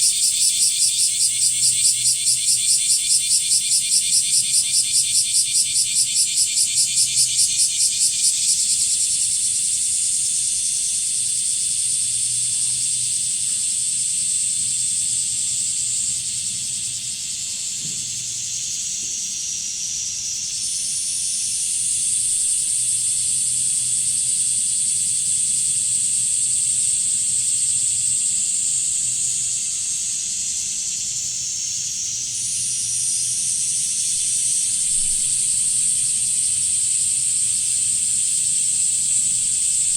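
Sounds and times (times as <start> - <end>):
cicadas singing: 0.0 - 39.9.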